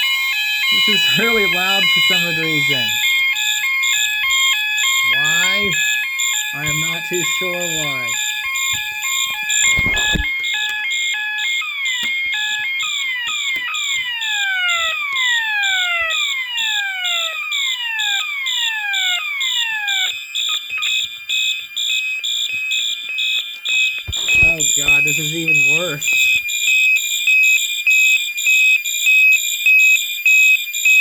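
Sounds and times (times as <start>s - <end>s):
two-tone alarm pattern: 0.0s - 29.1s
pulsing high alarm beep: 0.0s - 31.0s.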